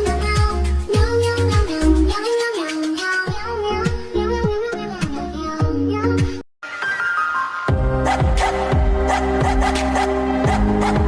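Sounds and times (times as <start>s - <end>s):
kick drum beat: 7.7s - 9.6s.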